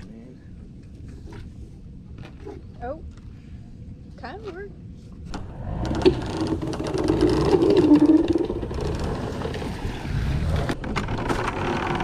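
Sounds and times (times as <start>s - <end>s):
clanks and knocks: 5.3s - 9.6s.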